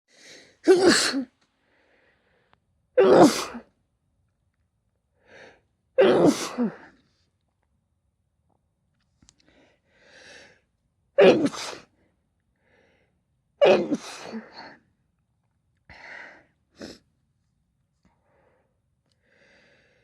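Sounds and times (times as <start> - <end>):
person sneezing: 0.7 - 1.3, 3.0 - 3.6, 6.0 - 6.9, 11.2 - 11.9, 13.6 - 14.7
quiet breath in: 18.1 - 20.0.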